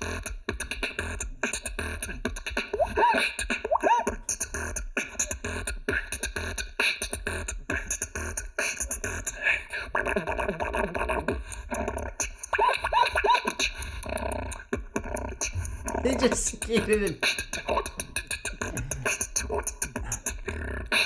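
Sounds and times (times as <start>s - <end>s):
beatboxing drum sounds: 0.0s - 21.0s
sliding vocal tones: 15.4s - 21.0s.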